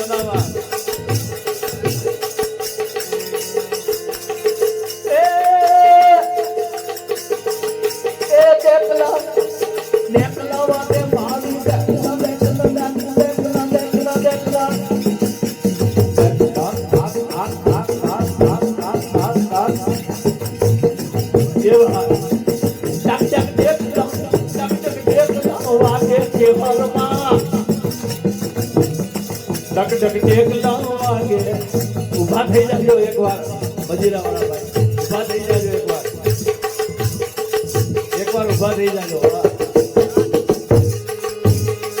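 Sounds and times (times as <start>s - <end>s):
hand cymbals beating: 0.0s - 42.0s.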